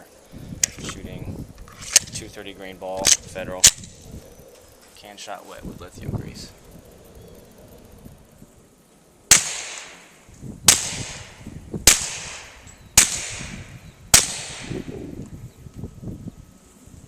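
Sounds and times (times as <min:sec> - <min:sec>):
gunshot echo: 0:09.3 - 0:10.1, 0:10.7 - 0:14.9
suppressed pistol shots: 0:09.3 - 0:10.1, 0:10.7 - 0:14.8.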